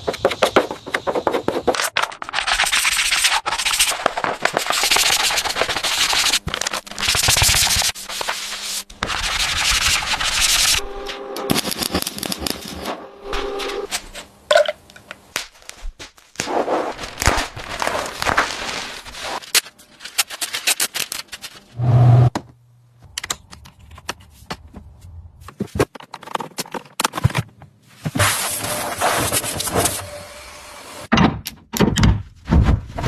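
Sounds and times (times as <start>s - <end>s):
short low hum: 21.8s - 23.0s
clicks taps and scraping: 22.3s - 28.2s.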